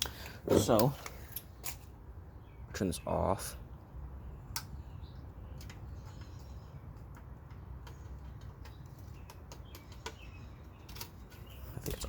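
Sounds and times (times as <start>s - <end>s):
sharp clicks: 4.5s - 4.8s.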